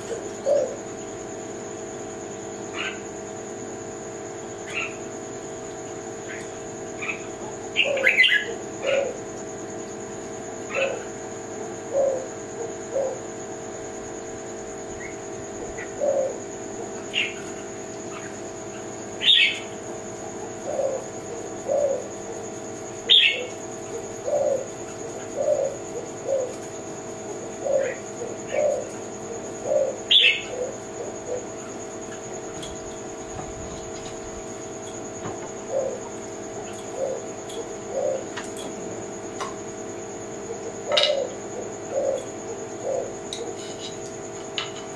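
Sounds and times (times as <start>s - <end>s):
dove cooing: 0.0s - 44.9s
thin high whine: 31.3s - 44.9s.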